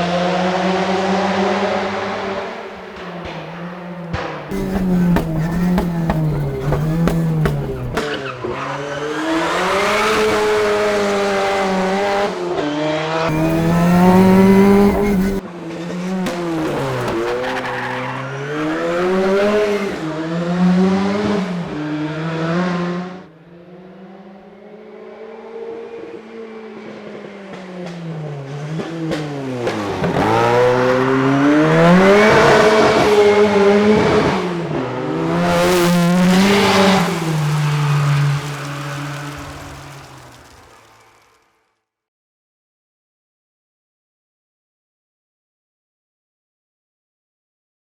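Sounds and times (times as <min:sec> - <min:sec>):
race car engine revving: 0:00.0 - 0:12.4, 0:13.2 - 0:15.4, 0:16.1 - 0:23.1, 0:29.2 - 0:41.5.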